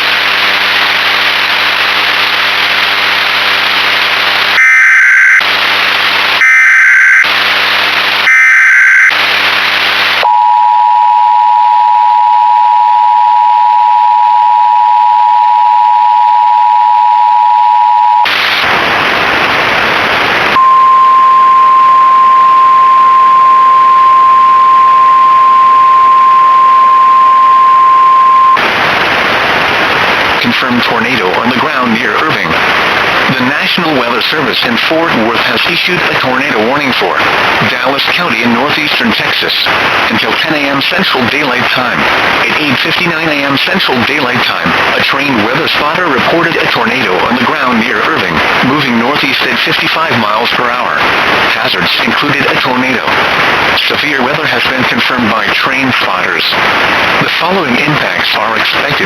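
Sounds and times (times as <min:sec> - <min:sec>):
static: 0:00.0 - 0:59.0
tape hiss and hum: 0:00.0 - 0:59.0
two-tone attention signal: 0:04.6 - 0:05.4, 0:06.4 - 0:07.3, 0:08.3 - 0:09.2, 0:20.6 - 0:28.6
data bursts: 0:04.6 - 0:05.5, 0:06.4 - 0:07.4, 0:08.0 - 0:18.6, 0:20.6 - 0:28.6
steady warning tone: 0:04.6 - 0:05.5, 0:06.4 - 0:07.4, 0:08.1 - 0:09.3, 0:20.6 - 0:28.6.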